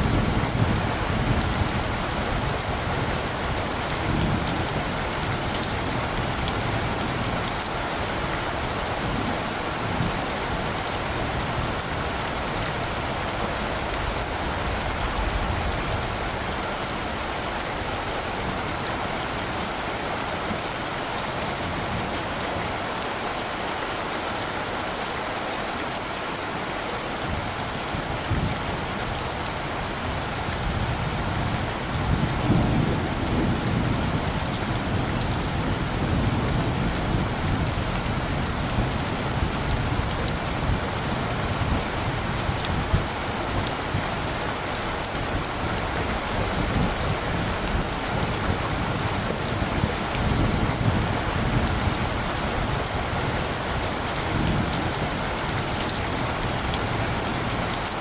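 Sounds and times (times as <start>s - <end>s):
steady rain falling: 0.0s - 58.0s
distant thunder rumble: 30.1s - 44.2s.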